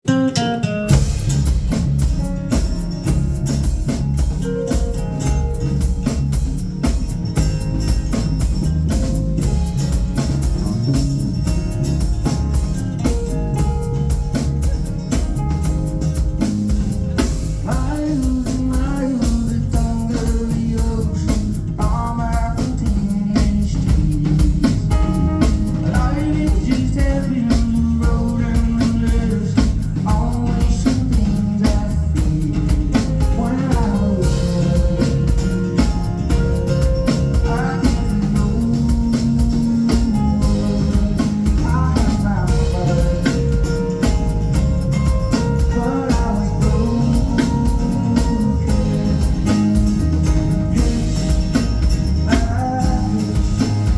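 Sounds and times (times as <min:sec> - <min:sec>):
drum kit beat: 0:00.0 - 0:53.9
guitar: 0:00.0 - 0:53.9
live rock band playing: 0:00.0 - 0:53.9
person singing: 0:17.6 - 0:36.4, 0:37.1 - 0:44.6, 0:45.3 - 0:53.9.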